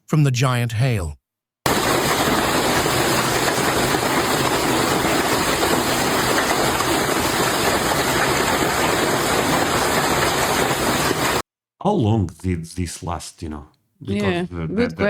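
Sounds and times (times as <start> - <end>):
heavy hail pounding: 1.7 - 11.4.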